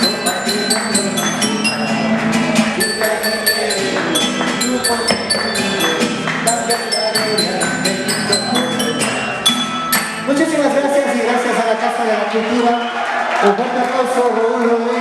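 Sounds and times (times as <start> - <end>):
struck tuned tubes melody: 0.0 - 10.8.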